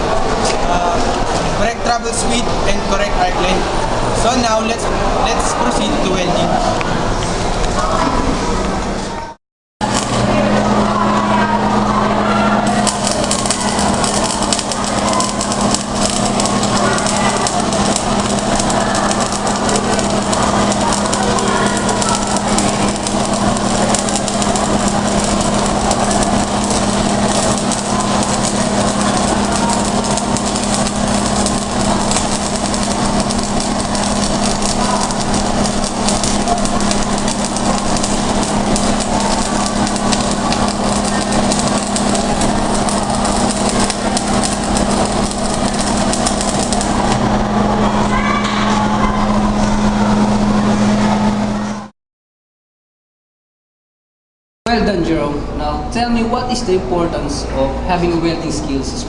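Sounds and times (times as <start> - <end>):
welding arc crackling: 9.8 - 48.2.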